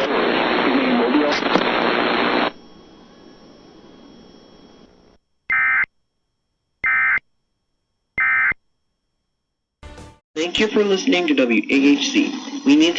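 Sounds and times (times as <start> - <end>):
noisy radio broadcast: 0.0 - 5.0.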